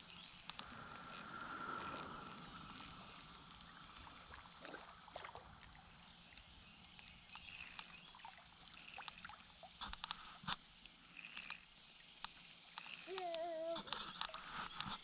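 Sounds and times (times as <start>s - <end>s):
steady high whine: 0.0s - 8.0s
water sloshing and splashing: 0.6s - 9.9s.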